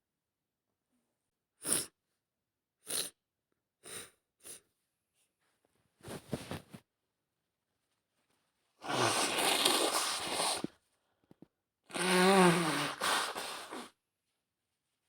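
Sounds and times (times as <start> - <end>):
woman blowing her nose: 8.8 - 10.7, 11.9 - 14.0.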